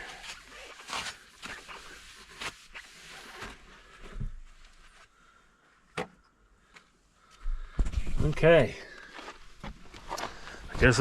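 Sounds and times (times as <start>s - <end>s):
cloth rubbing on metal: 0.7s - 5.0s.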